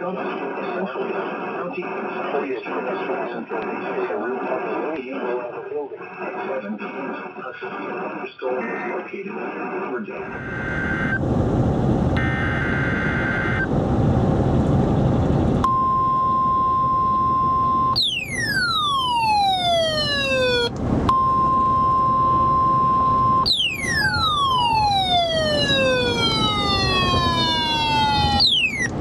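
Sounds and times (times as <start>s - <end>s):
radio hiss: 10.2s - 11.2s, 12.2s - 13.7s
falling whistle: 15.7s - 29.0s
weather radio alert tone: 17.8s - 20.7s, 23.2s - 29.0s.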